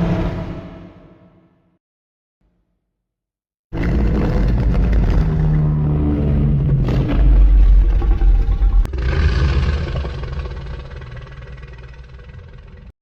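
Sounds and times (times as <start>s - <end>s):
monster roar: 3.8s - 12.9s.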